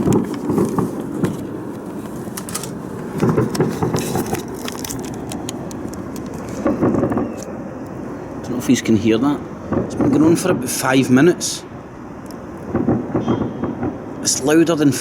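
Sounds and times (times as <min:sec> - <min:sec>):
sharp crackling pops: 0:00.0 - 0:15.0
distant explosive booms: 0:02.7 - 0:04.6, 0:05.8 - 0:14.6.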